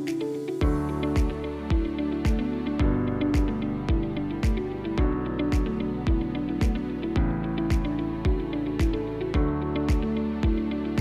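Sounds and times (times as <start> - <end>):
instrumental music with steady beat: 0.0 - 11.0.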